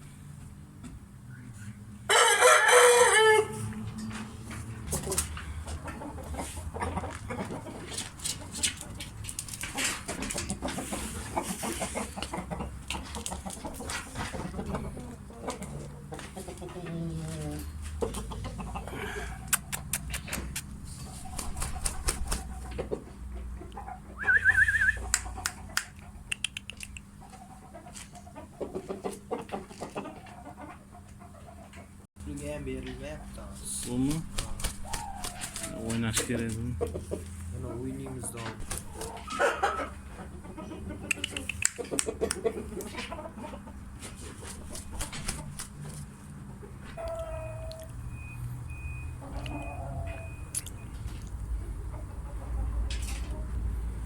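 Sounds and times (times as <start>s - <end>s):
bird clucking: 4.8s - 32.0s, 33.4s - 46.0s, 49.2s - 50.4s
sharp clicks and scuffling: 7.0s - 14.6s, 19.5s - 22.9s
drawn-out bird calls: 34.7s - 35.9s
faint high beep: 47.3s - 50.9s.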